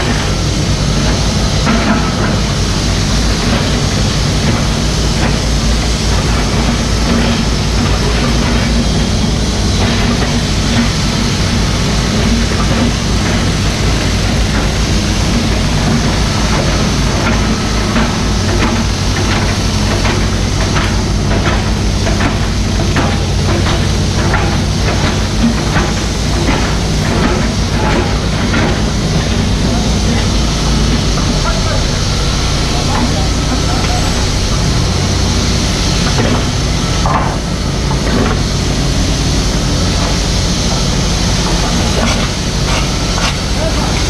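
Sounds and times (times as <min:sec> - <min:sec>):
diesel engine running: 0:00.0 - 0:44.0.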